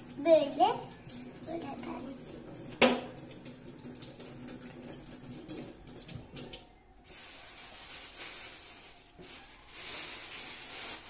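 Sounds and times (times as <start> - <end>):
tap water running into sink: 0.0 - 6.6.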